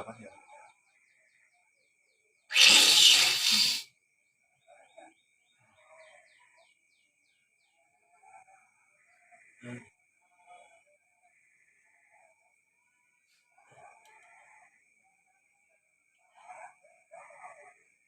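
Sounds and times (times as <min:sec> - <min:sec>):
faint bird chirps: 0:00.0 - 0:15.3
person expelling phlegm: 0:02.5 - 0:03.8.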